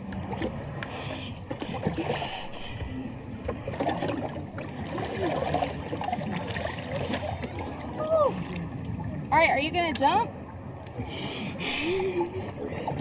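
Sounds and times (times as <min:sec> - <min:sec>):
water sloshing against boat hull: 0:00.0 - 0:13.0.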